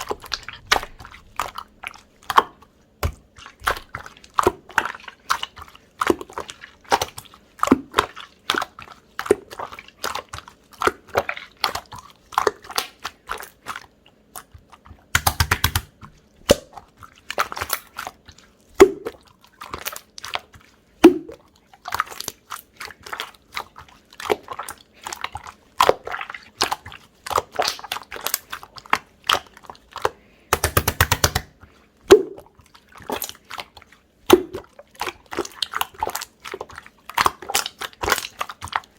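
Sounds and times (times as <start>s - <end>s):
air bubbles popping: 0.0s - 4.0s, 18.8s - 19.2s, 32.1s - 33.3s, 34.3s - 34.7s
rapid crackling of slime: 0.0s - 38.9s
slime squishing with sticky clicks: 0.0s - 38.9s.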